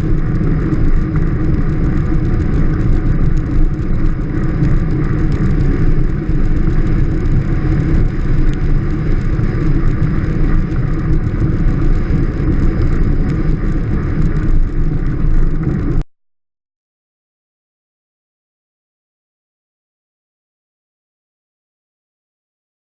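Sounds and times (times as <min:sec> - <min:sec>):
velomobile rolling rumble: 0:00.0 - 0:16.1.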